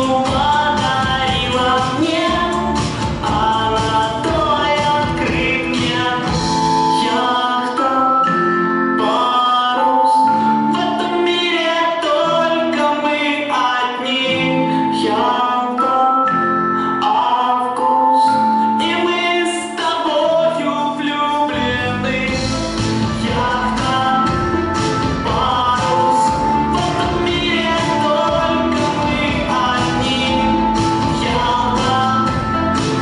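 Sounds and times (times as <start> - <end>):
bass: 0.0 - 7.4, 20.2 - 33.0
instrumental backing: 0.0 - 33.0.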